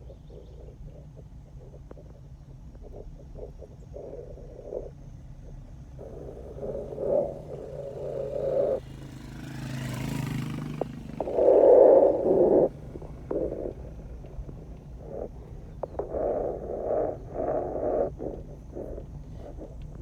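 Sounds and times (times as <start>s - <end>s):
vehicle engine running: 0.0s - 20.0s
rumbling from road bumps: 0.4s - 20.0s
wind on microphone: 6.0s - 8.9s, 9.6s - 20.0s.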